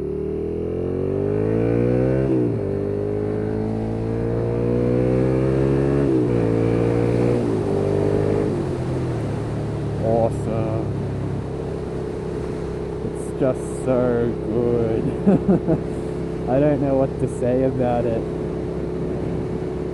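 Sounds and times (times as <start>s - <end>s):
motorcycle engine accelerating: 0.0s - 19.9s.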